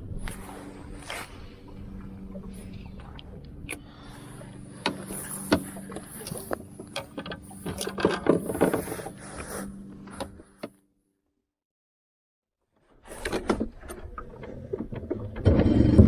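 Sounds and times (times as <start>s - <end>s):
knocks and clatter in hull: 0.0s - 9.5s, 13.1s - 16.0s
small boat motor humming: 0.0s - 10.8s, 13.0s - 16.0s.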